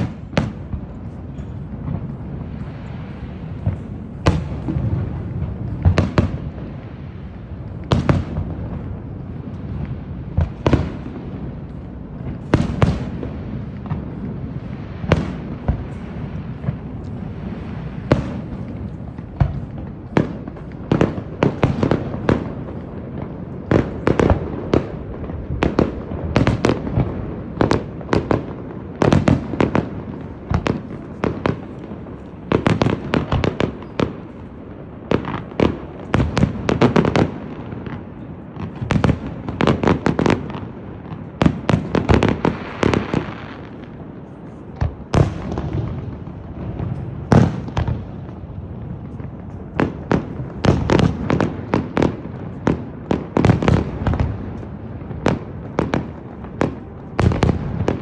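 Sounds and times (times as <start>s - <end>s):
continuous low rumble: 0.0s - 42.8s.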